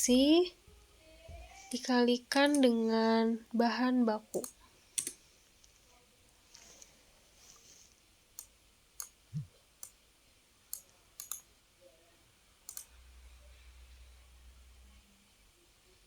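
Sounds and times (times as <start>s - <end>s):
computer mouse clicking: 4.3s - 5.2s, 8.4s - 10.0s, 10.7s - 11.5s, 12.7s - 13.0s.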